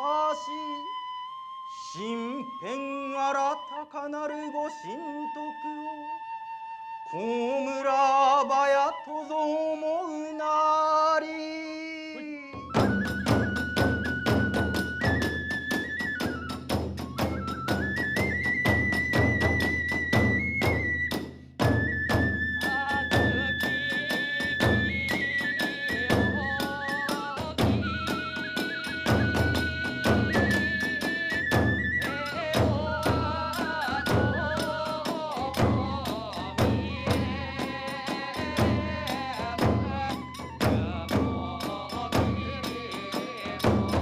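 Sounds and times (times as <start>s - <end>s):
bamboo flute long notes: 0.0s - 11.2s, 12.2s - 44.0s
fast steady drum beats: 12.6s - 44.0s.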